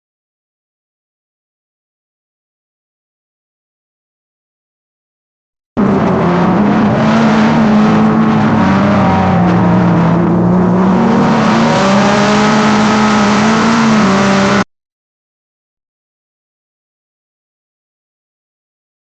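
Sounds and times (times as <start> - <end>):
drag racing car engines running: 5.8 - 14.6.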